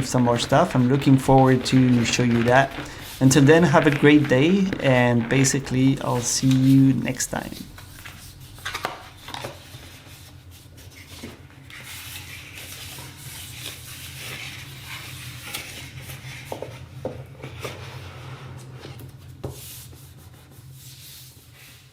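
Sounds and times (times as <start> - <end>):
steady low hum: 0.0 - 9.5
rustling and rubbing: 0.0 - 15.8.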